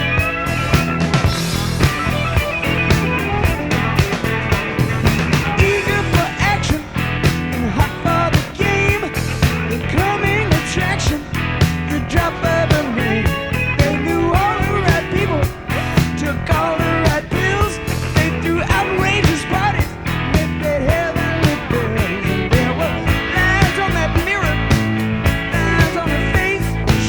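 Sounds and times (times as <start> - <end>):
drum beat: 0.0 - 19.6
electric guitar: 0.0 - 27.0
person singing: 5.1 - 27.0.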